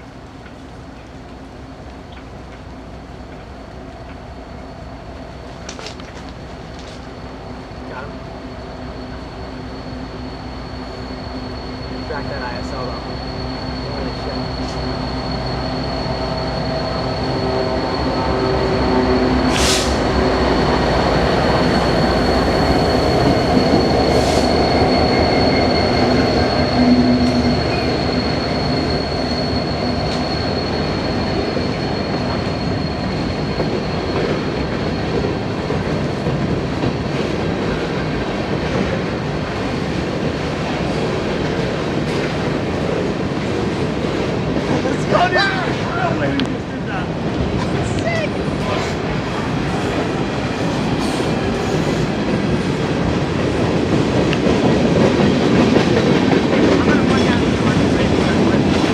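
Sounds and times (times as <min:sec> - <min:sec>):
locomotive engine drone: 0:00.0 - 0:36.6
high wheel squeal: 0:07.3 - 0:35.8, 0:44.7 - 0:53.0
short hisses: 0:19.5 - 0:20.1.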